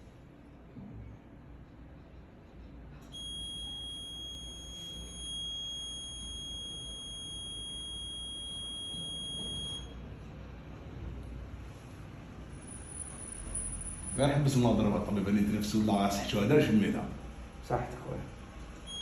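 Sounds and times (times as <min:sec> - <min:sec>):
high-pitched beep tone: 0:03.1 - 0:10.0.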